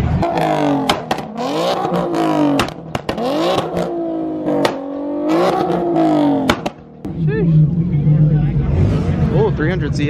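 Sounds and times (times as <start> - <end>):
car engine revving: 0.0 - 10.0
sharp exhaust cracks: 0.1 - 7.4.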